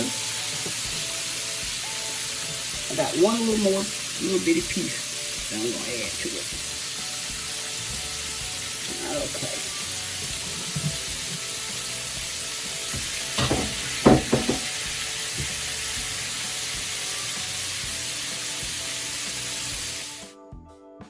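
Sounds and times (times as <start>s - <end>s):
chicken sizzling in a skillet: 0.0s - 20.3s
music: 0.0s - 21.0s
knocks: 13.0s - 14.7s.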